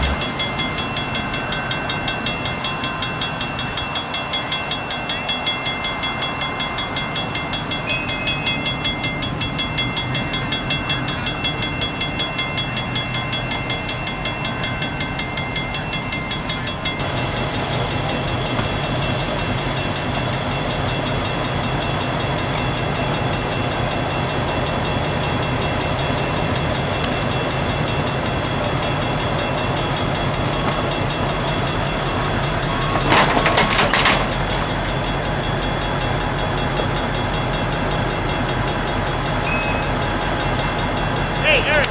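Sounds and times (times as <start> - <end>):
fast regular engine pulse: 0.0 - 0.6
diesel locomotive idling: 0.0 - 41.9.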